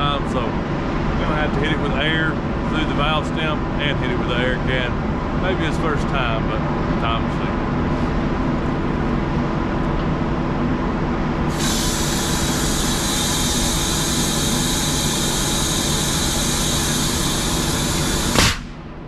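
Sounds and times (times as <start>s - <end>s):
compressed air hissing into tire: 11.5s - 18.8s.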